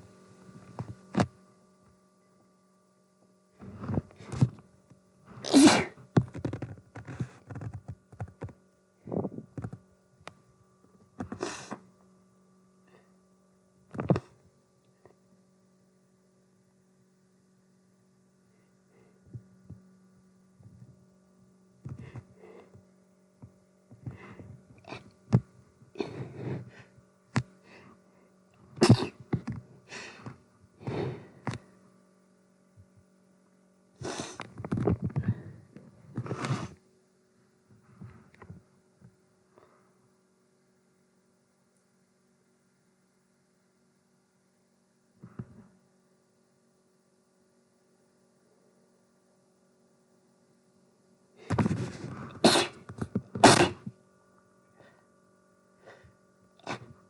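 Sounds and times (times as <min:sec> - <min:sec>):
electrical hum: 0:00.0 - 0:57.0
person sneezing: 0:05.4 - 0:06.0, 0:11.4 - 0:11.8, 0:26.0 - 0:26.6, 0:28.8 - 0:29.2, 0:52.3 - 0:53.9, 0:56.6 - 0:56.9.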